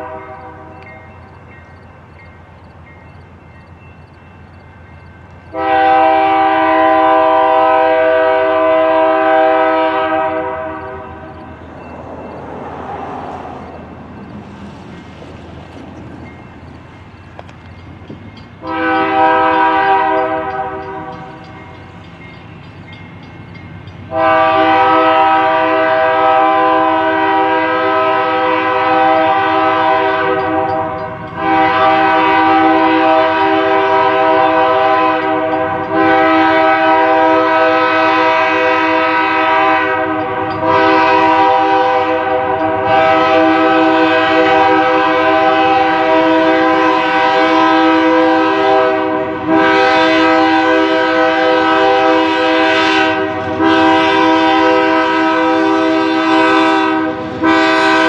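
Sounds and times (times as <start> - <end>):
locomotive air horn blasts: 0.0 - 0.9, 5.5 - 11.5, 18.6 - 21.5, 24.1 - 58.0
low rumble of moving train: 0.0 - 58.0.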